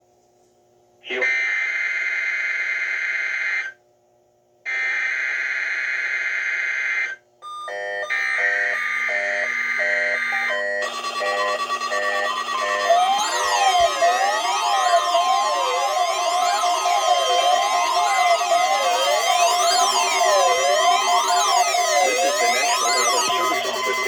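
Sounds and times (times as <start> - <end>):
loud steady alarm tone: 4.7 - 24.0
pulsing electronic tone: 8.1 - 24.0
buzzing digital data bursts: 8.2 - 24.0.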